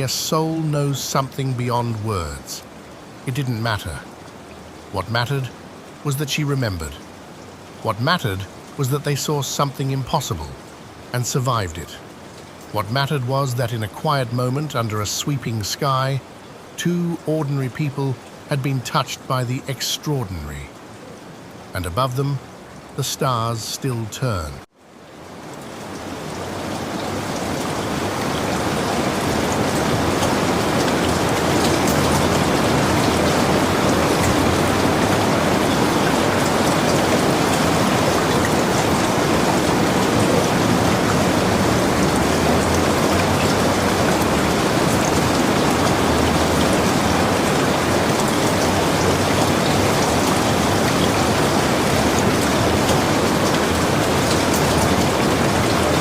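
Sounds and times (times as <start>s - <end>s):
raindrops pattering: 0.0s - 23.4s, 24.2s - 56.0s
steady rain falling: 0.0s - 56.0s.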